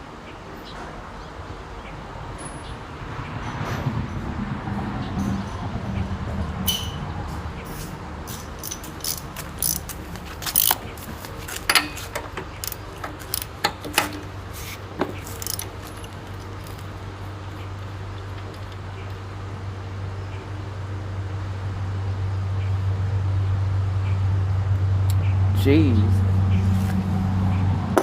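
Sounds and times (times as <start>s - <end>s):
hand tools clinking on metal: 8.3s - 14.3s.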